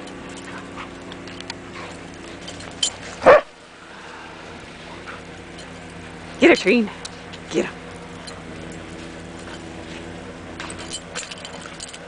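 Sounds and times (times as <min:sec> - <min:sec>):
steady low hum: 0:00.0 - 0:12.0
dog barking: 0:03.2 - 0:03.6.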